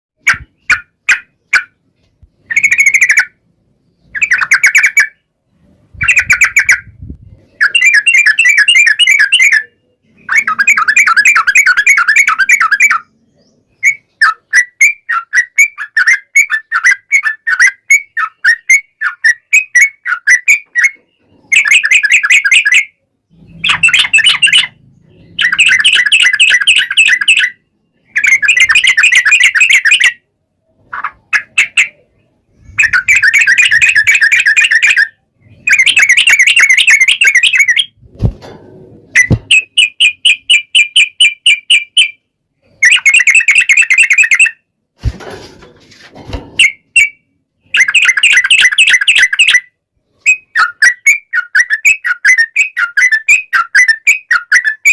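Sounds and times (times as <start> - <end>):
bird bubbly chattering song: 4.0 - 5.2, 6.0 - 6.9, 23.4 - 30.2, 30.9 - 38.0.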